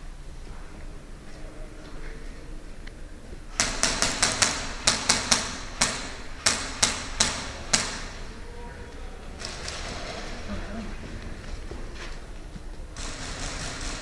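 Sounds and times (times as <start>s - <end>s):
airsoft gun shots: 3.6s - 8.3s, 13.0s - 14.0s.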